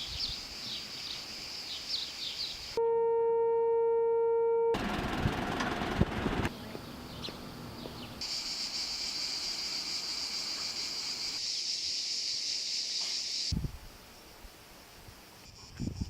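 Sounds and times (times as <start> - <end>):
cicadas buzzing: 0.0 - 2.8, 6.5 - 16.0.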